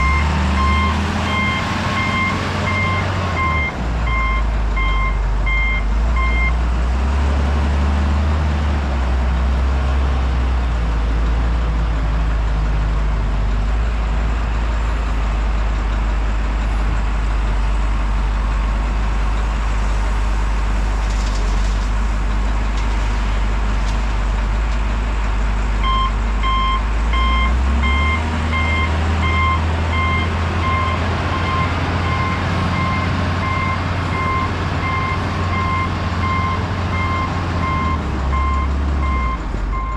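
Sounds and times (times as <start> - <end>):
reversing alarm beeps: 0.0 - 6.5
truck engine rumbling: 0.0 - 39.9.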